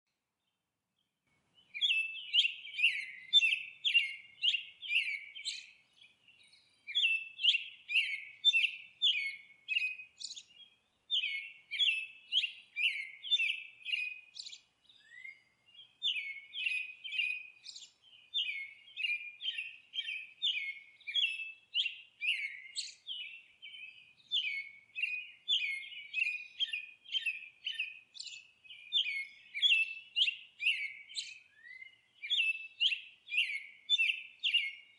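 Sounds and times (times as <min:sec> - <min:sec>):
bird chirping: 0:00.1 - 0:34.9.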